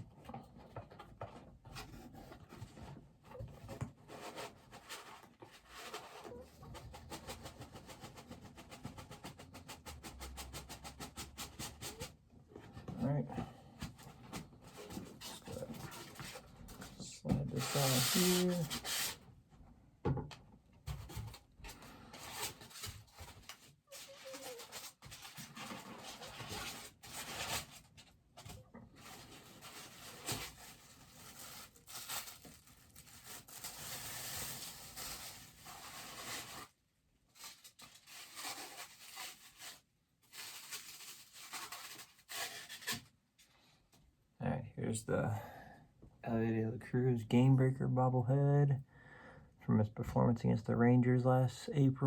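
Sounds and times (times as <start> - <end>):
packaging rustling and tearing: 22.2 - 43.1.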